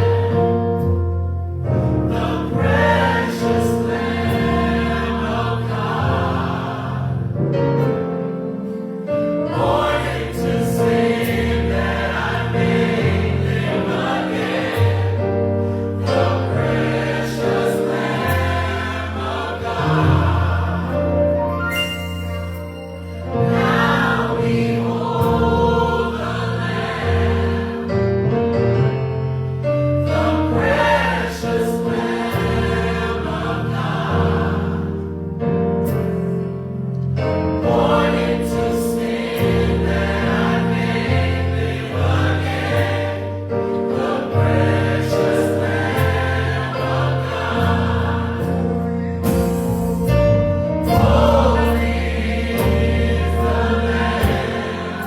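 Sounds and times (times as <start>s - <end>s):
gospel choir singing: 0.0s - 28.3s, 29.4s - 36.6s, 37.2s - 55.0s.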